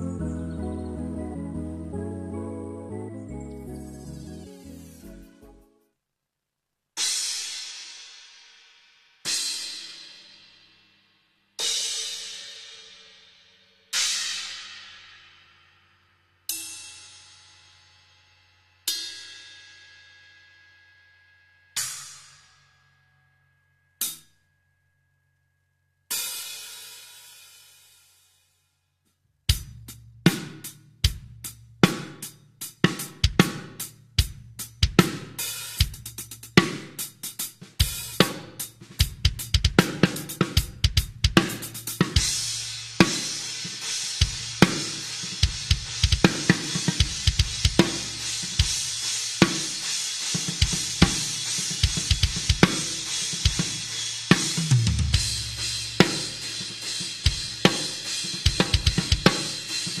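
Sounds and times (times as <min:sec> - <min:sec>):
ringing cymbal wash: 0:11.6 - 0:24.3, 0:41.6 - 1:00.0
drum kit playing: 0:29.5 - 1:00.0.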